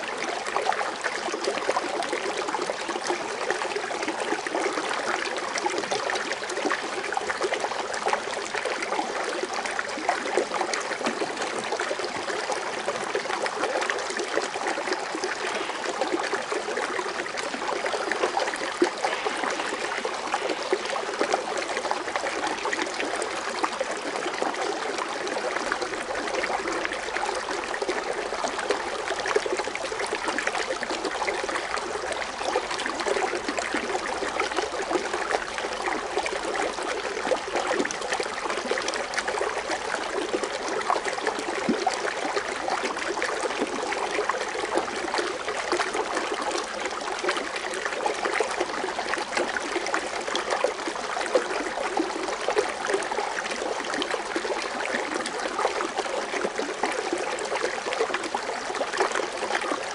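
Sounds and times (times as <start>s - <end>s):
water fountain splashing: 18.3s - 22.6s.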